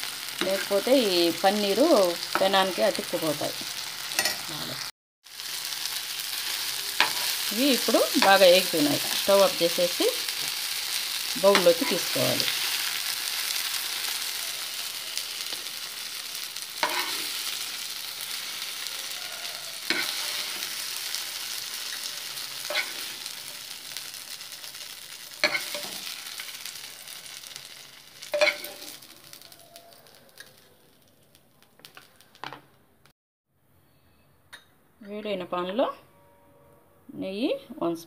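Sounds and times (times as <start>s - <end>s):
oil sizzling in a pan: 0.0s - 32.6s
spatula scraping a pan: 16.8s - 17.6s, 18.3s - 23.4s, 25.4s - 26.6s, 28.3s - 29.5s.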